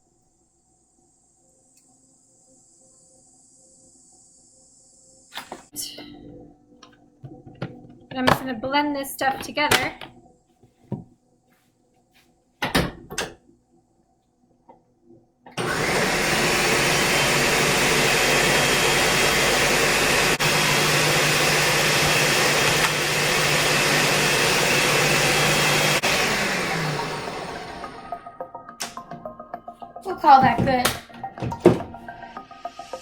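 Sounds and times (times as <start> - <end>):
blender motor humming: 15.6 - 28.2.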